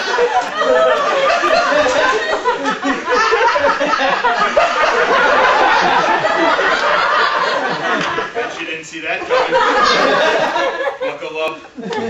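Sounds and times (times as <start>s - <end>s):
audience laughing loudly: 0.0s - 12.0s.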